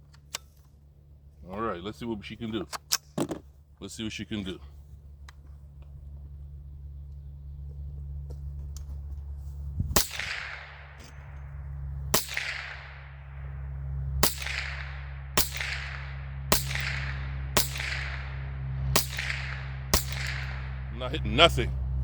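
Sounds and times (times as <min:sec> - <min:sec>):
low rumble: 0:05.0 - 0:22.0
rifle shots echoing: 0:10.0 - 0:21.8.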